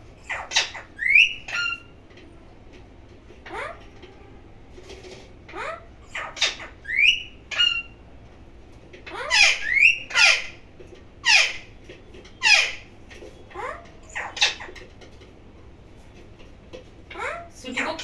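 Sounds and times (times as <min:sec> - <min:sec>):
parrot squawking: 0:00.2 - 0:01.9, 0:03.4 - 0:03.9, 0:05.4 - 0:08.0, 0:09.0 - 0:10.6, 0:11.2 - 0:11.7, 0:12.4 - 0:12.9, 0:13.5 - 0:14.9, 0:17.1 - 0:18.0.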